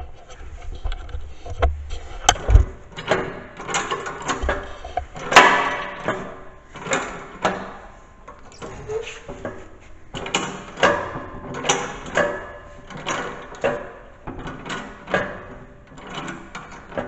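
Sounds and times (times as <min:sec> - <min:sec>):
short scrapes: 0:08.6 - 0:09.8.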